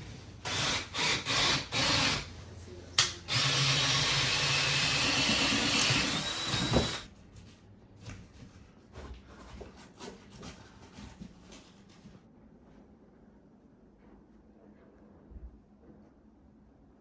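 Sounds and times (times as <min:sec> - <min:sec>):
electric drill boring wood: 0:00.4 - 0:02.3, 0:03.3 - 0:07.0.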